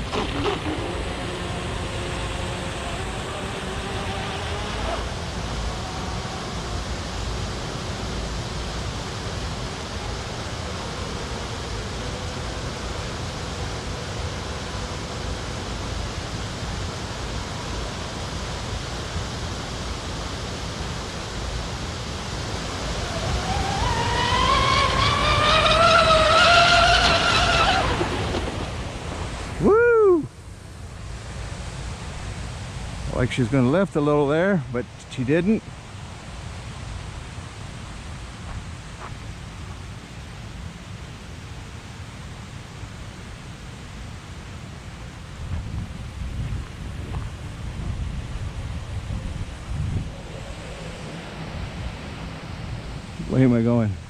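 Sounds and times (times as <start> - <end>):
high whine of boat motor: 0.0 - 38.5
water hiss: 0.0 - 53.9
wind: 0.0 - 54.0.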